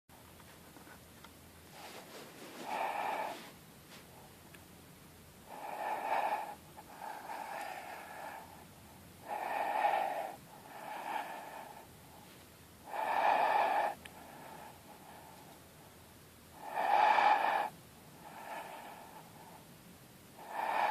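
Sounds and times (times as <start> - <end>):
person breathing deeply: 2.6 - 3.6, 5.5 - 15.6, 16.6 - 19.8, 20.4 - 20.9.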